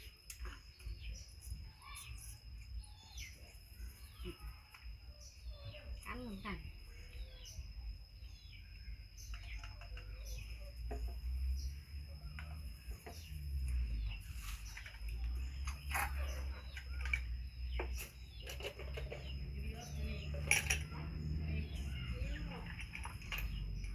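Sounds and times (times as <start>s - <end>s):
birds chirping: 0.0s - 23.9s.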